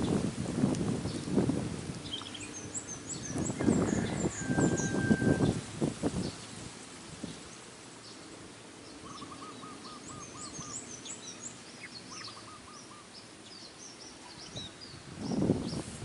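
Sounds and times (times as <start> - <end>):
low outdoor background: 0.0 - 16.0
small birds chirping: 0.9 - 16.0.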